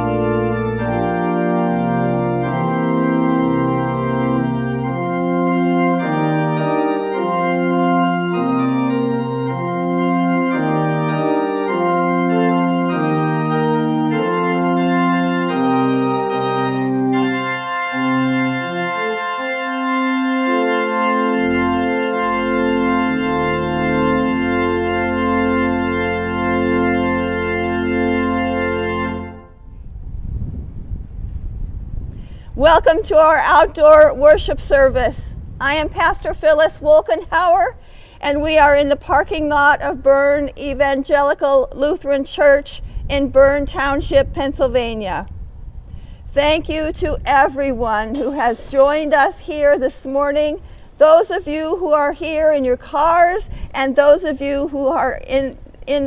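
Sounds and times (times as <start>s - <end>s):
organ playing slow chords: 0.0s - 29.9s, 42.8s - 55.8s.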